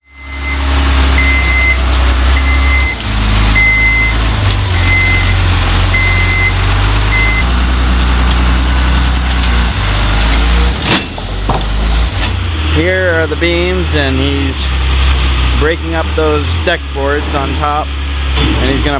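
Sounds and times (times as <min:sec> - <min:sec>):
backup alarm beeping: 0:00.0 - 0:07.5
diesel engine running under load: 0:00.0 - 0:18.9.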